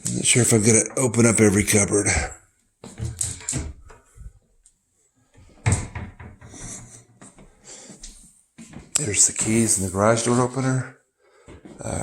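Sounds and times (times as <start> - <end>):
quiet cabinet handling: 5.3 - 7.1
wooden cabinet knocks and rattles: 5.5 - 6.8
cabinet door bang: 5.6 - 6.5.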